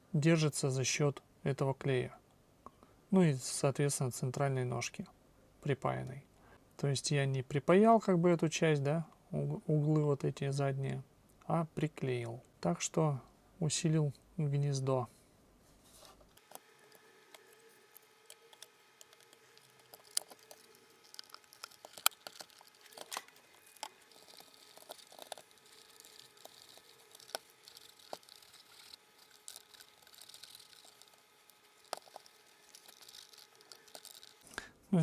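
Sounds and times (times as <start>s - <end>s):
plastic parts clicking and tapping: 16.3s - 34.5s.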